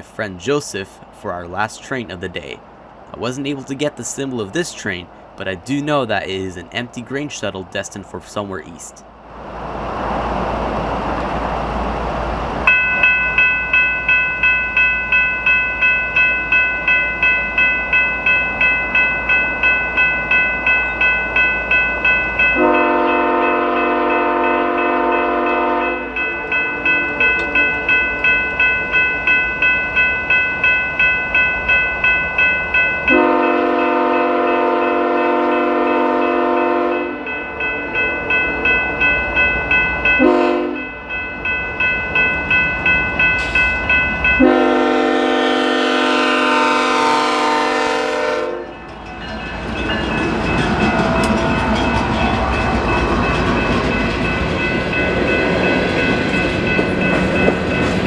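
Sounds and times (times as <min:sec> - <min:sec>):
freight train rumble: 0:00.0 - 0:58.0
crossing bell ringing: 0:12.6 - 0:58.0
train horn blasts: 0:22.5 - 0:28.3, 0:33.1 - 0:37.4, 0:40.2 - 0:40.9, 0:44.4 - 0:48.8.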